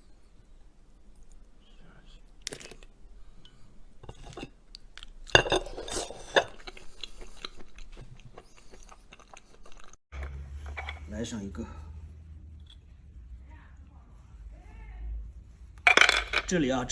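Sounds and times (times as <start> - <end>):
shells and utensils clinking on dish: 2.4 - 10.0.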